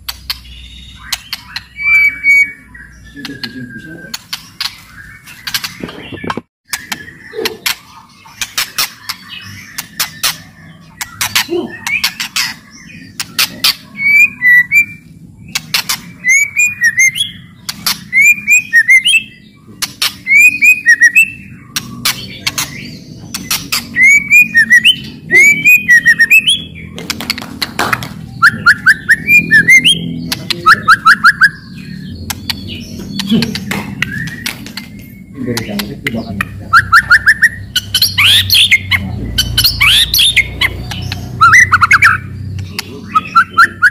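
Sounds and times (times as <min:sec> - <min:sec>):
bird whistled notes: 0:00.6 - 0:04.1, 0:24.0 - 0:26.7, 0:28.4 - 0:31.8, 0:36.7 - 0:40.6, 0:41.4 - 0:42.3.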